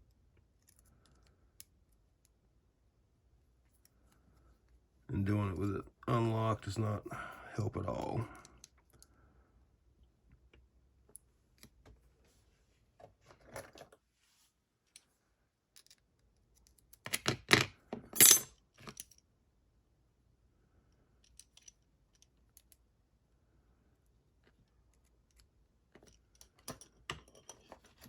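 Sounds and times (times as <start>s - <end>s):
lock picks clicking and scraping: 0.4s - 2.4s, 15.7s - 19.2s, 21.2s - 22.9s, 24.4s - 28.0s.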